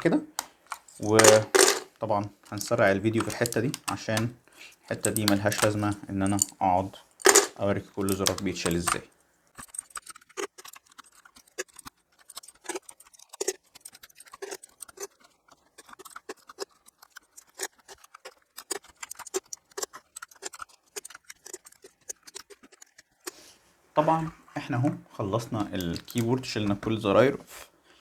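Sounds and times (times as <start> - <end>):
keycaps clicking off keyboard: 0.0 - 1.9, 2.5 - 4.3, 4.9 - 6.6, 7.2 - 9.0.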